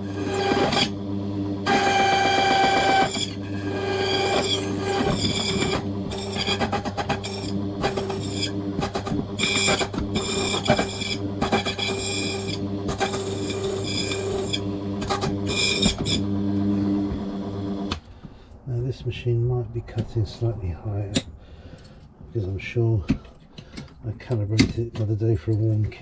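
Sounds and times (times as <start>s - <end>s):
cutter screeching on key: 0.0s - 1.0s, 1.7s - 16.2s
machine motor hum: 0.0s - 18.0s.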